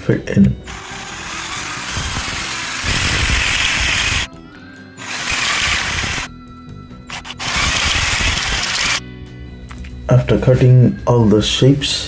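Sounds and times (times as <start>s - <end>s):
background music: 0.0s - 12.0s
power tool grinding steel: 0.7s - 4.3s, 5.0s - 6.3s, 7.1s - 9.0s.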